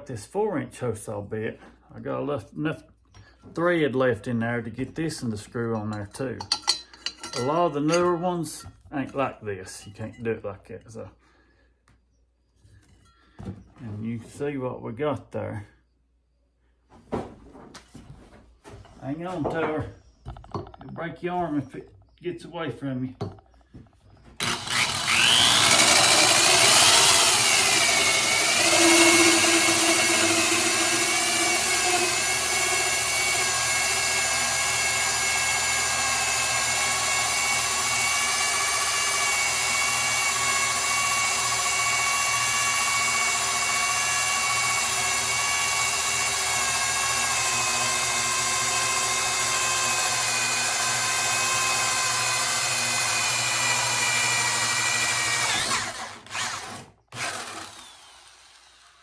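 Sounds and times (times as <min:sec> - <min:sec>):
drill with hole saw whining: 0:23.8 - 0:59.0.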